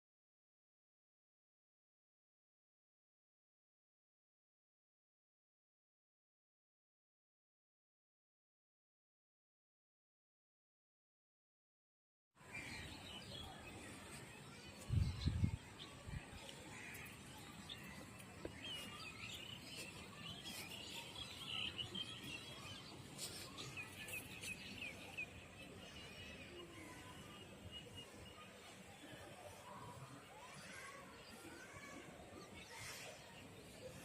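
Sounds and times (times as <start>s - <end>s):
small birds chirping: 12.5s - 34.0s.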